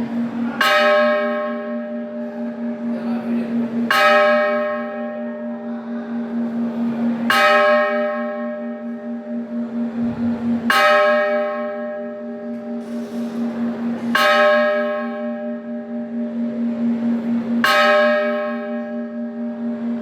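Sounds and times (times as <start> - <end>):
temple bell ringing: 0.0 - 20.0
wavering low hum: 8.8 - 14.2.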